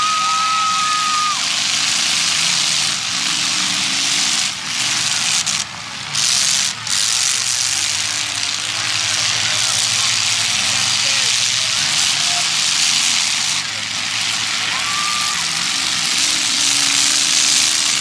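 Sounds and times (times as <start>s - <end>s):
car engines running loud: 0.0s - 18.0s.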